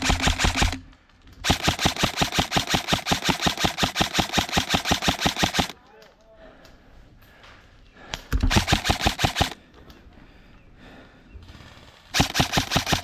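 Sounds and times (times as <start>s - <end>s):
airsoft gun automatic bursts: 0.0s - 5.8s, 8.4s - 9.6s, 11.5s - 13.0s.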